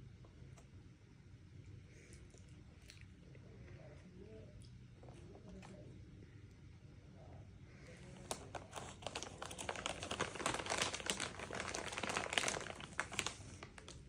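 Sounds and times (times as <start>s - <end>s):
plastic packaging crinkling: 8.0s - 14.0s.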